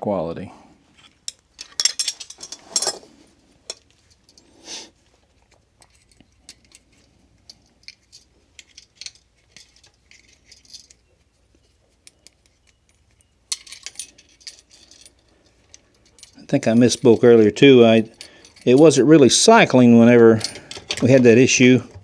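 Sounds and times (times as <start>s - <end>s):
metal clatter: 1.3s - 3.1s, 5.8s - 19.6s, 20.3s - 22.0s.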